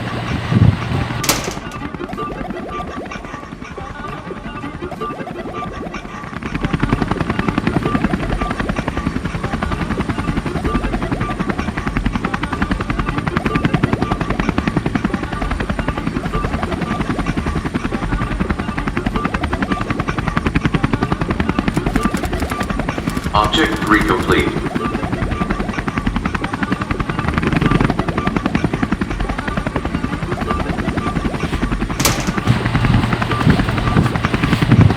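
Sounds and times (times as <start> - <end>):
helicopter rotor chopping: 0.0 - 2.2, 20.9 - 25.5, 30.9 - 34.9.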